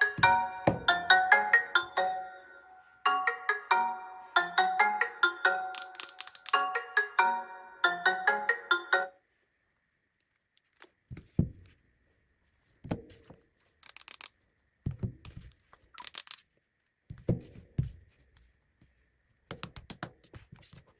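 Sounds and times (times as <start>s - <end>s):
marimba smartphone ringtone: 0.0s - 6.0s, 6.6s - 9.2s.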